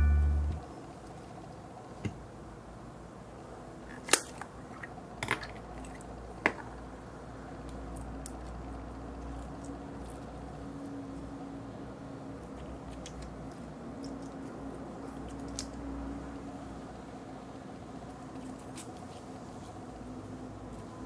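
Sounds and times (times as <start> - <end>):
low steady hum: 0.0 - 0.7
light clicks and taps of toys: 7.6 - 11.3, 12.4 - 15.9.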